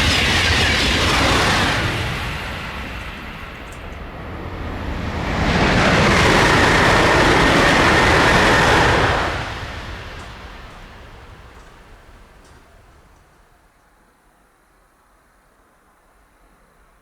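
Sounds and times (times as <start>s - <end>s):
high-speed train passing: 0.0s - 13.6s.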